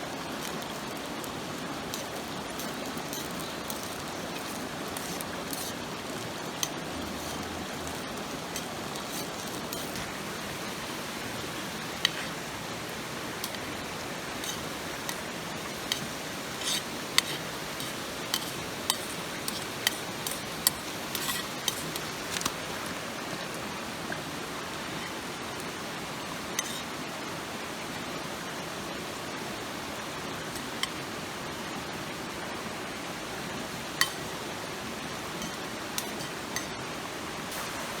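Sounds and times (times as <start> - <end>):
mountain stream rushing: 0.0 - 38.0
metal cooking utensils clinking: 1.9 - 22.6, 34.0 - 34.4, 35.3 - 36.8.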